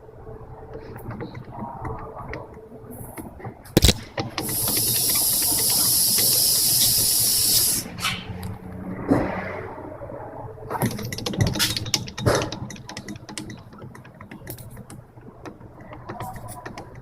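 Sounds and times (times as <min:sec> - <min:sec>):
sharp clicks and knocks: 0:00.7 - 0:09.2, 0:10.7 - 0:17.0
two-stroke engine running: 0:03.8 - 0:07.9.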